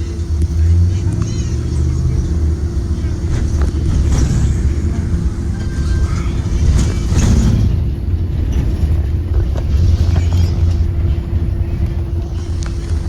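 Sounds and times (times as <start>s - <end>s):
bus engine and road rumble: 0.0s - 13.0s.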